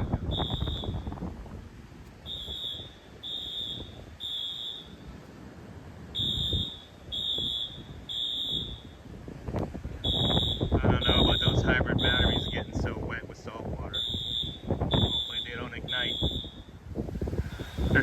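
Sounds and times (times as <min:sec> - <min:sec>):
fire alarm beeping: 0:00.0 - 0:01.2, 0:02.2 - 0:05.2, 0:06.2 - 0:09.0, 0:10.0 - 0:12.7, 0:13.9 - 0:16.8
wind rumbling on microphone: 0:00.0 - 0:04.3, 0:05.0 - 0:18.0.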